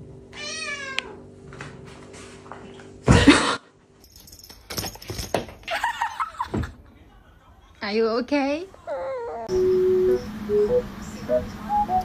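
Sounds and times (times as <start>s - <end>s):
cat meowing: 0.4s - 1.2s.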